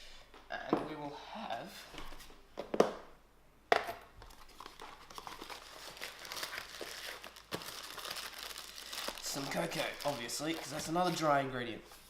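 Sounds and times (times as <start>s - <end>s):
packaging crinkling and rustling: 4.2s - 11.5s.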